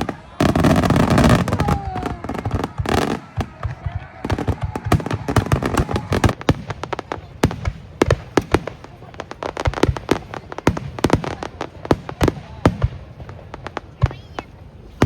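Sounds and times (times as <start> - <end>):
fireworks exploding: 0.0 - 15.0.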